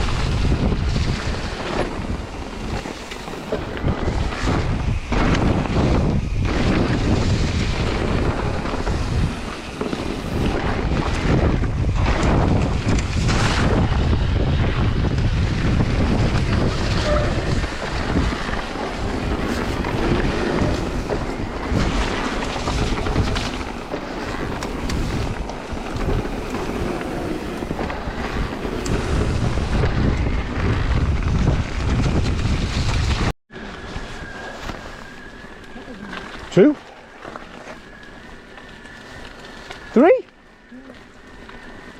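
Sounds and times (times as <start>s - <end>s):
tyres rumbling on trail: 0.0s - 41.9s
wind buffeting microphone: 0.0s - 41.9s.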